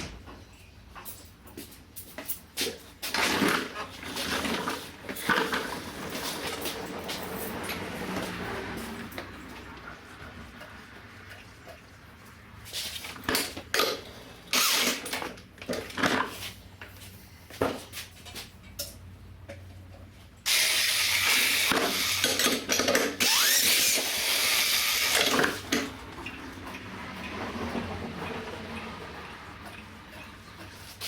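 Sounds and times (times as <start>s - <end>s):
electric drill cranking engine: 14.5s - 15.3s, 20.5s - 26.0s.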